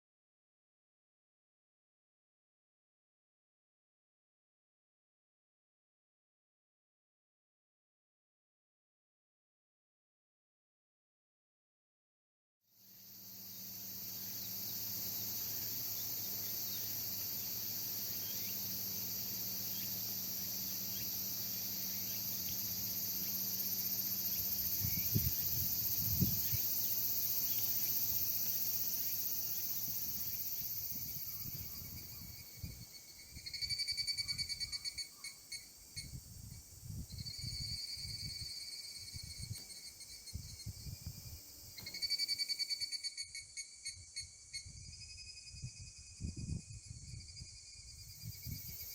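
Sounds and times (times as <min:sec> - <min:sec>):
insects chorus: 0:12.8 - 0:48.9
rapidly pulsing insect trill: 0:12.8 - 0:48.9
low wind rumble: 0:20.1 - 0:27.5, 0:29.7 - 0:34.7.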